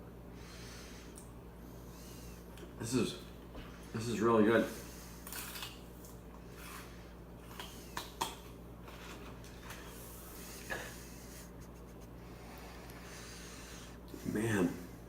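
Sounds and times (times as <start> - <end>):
person chewing crunchy stalk: 4.8 - 13.1.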